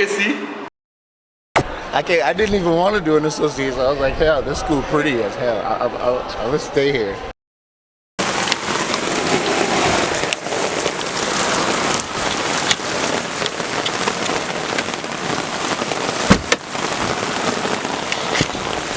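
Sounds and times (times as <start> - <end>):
rain on hard surfaces: 8.2 - 18.9
loud knock: 16.3 - 16.6.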